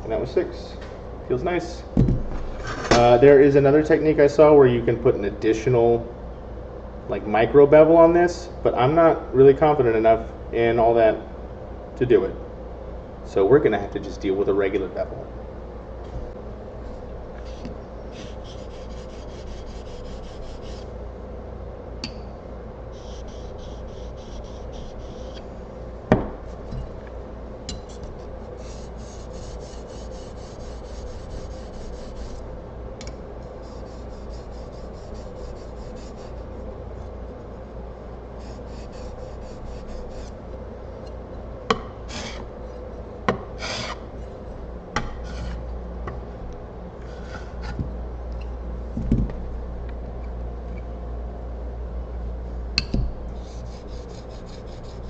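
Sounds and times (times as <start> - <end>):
blade rubbing on sharpening stone: 18.1 - 20.9.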